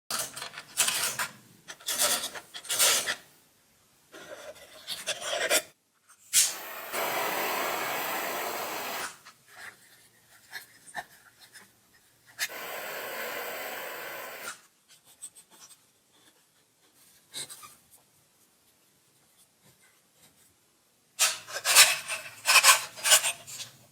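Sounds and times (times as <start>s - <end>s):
hissing sanding passes: 6.4s - 9.2s, 12.5s - 14.5s.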